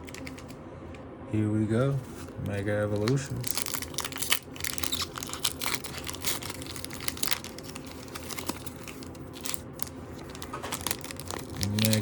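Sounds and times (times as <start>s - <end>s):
foil wrapper crinkling and tearing: 2.8s - 12.0s.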